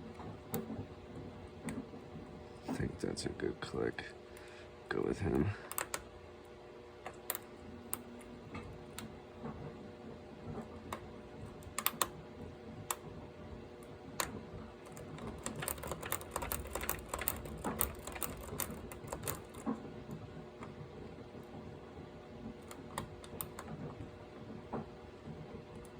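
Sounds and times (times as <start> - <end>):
lock pick clicking and scraping: 14.9 - 19.6.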